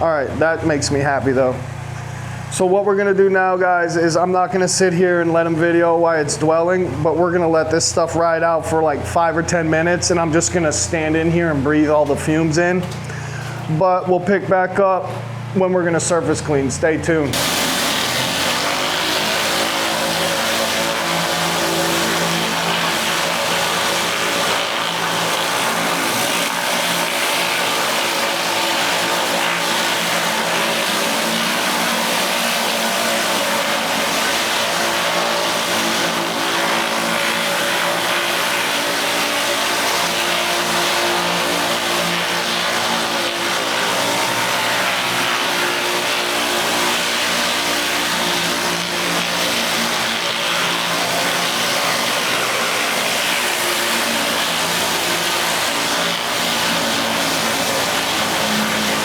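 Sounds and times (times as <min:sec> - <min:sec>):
pressure washer engine running: 0:00.0 - 0:59.0
high-pressure water spraying: 0:17.3 - 0:59.0.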